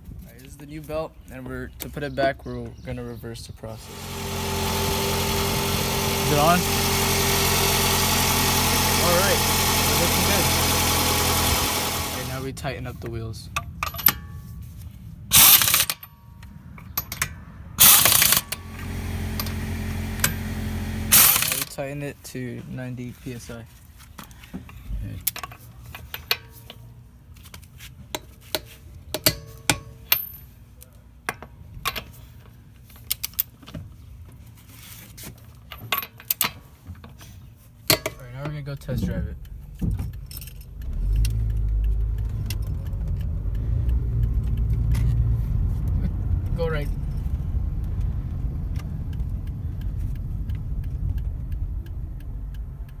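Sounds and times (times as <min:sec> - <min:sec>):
car engine and road rumble: 0:03.7 - 0:14.2, 0:14.8 - 0:23.7, 0:37.0 - 0:53.0
metallic clicks of hand tools: 0:15.3 - 0:16.1, 0:17.0 - 0:18.6, 0:21.1 - 0:21.8, 0:37.9 - 0:38.6, 0:39.4 - 0:45.2
light ticks: 0:40.8 - 0:45.2, 0:47.8 - 0:53.0.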